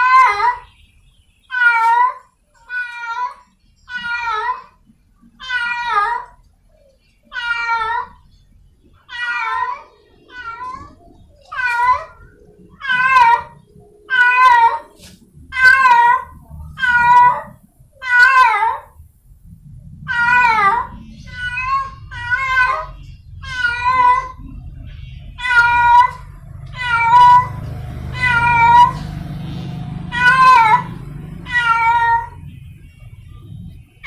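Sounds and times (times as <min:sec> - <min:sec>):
cat yowling: 0:00.0 - 0:00.7, 0:01.5 - 0:04.8, 0:05.4 - 0:06.4, 0:07.2 - 0:08.2, 0:09.1 - 0:19.0, 0:20.1 - 0:24.6, 0:25.4 - 0:32.5.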